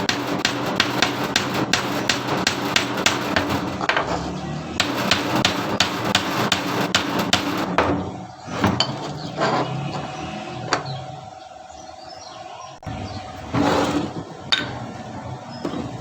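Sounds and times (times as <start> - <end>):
hammer blows: 0.0 - 8.8.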